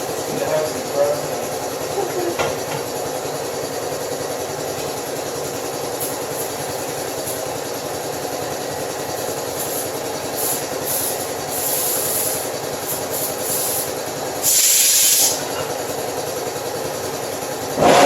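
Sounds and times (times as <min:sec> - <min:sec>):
compressed air hissing: 0:09.6 - 0:15.9, 0:17.7 - 0:18.0
machine running: 0:14.5 - 0:18.0.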